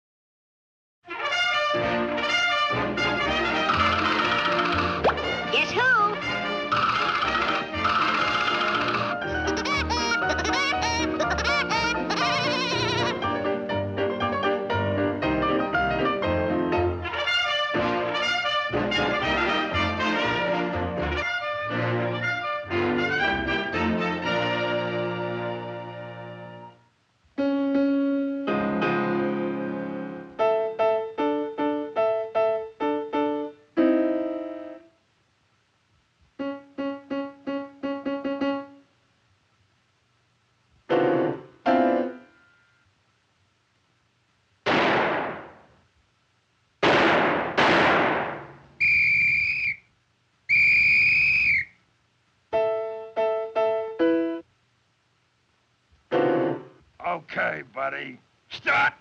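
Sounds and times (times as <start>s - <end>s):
piano notes: 1.8s - 26.6s, 36.4s - 38.8s, 40.9s - 42.4s, 52.5s - 54.4s, 56.1s - 56.8s
held high tones: 3.7s - 13.1s, 48.8s - 49.8s, 50.5s - 51.7s.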